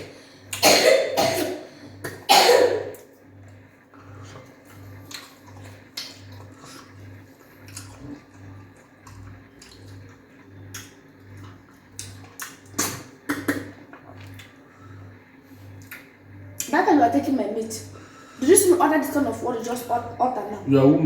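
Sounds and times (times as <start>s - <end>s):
wet eating by hand: 3.5s - 16.2s.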